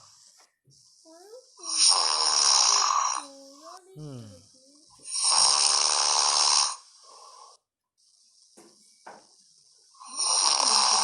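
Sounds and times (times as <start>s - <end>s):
man snoring: 1.6s - 11.0s.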